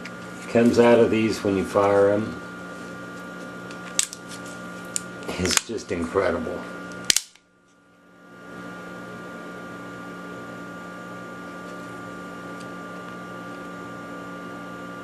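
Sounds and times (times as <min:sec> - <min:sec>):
background hum with held tones: 0:00.0 - 0:15.0
switchblade snapping open: 0:03.9 - 0:04.2, 0:05.0 - 0:05.7, 0:07.0 - 0:07.4.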